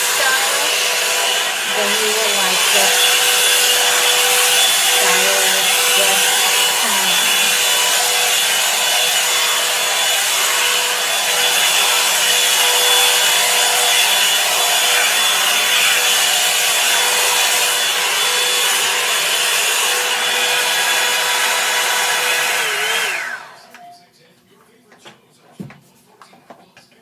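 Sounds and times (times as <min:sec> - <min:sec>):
motor spinning down: 0:00.0 - 0:19.0
hair dryer brush running: 0:00.0 - 0:23.7.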